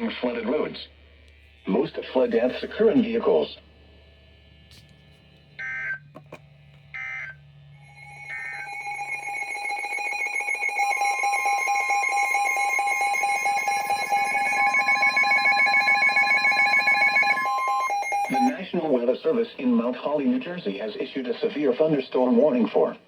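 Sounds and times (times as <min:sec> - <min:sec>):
two-tone attention signal: 0:05.6 - 0:06.0, 0:07.0 - 0:18.6
squawking data bursts: 0:07.0 - 0:18.7.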